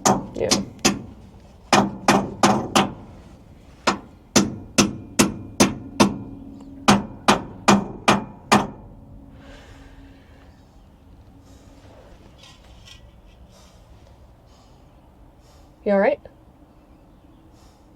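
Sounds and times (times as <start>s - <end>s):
hammer strikes ringing: 3.9s - 9.4s.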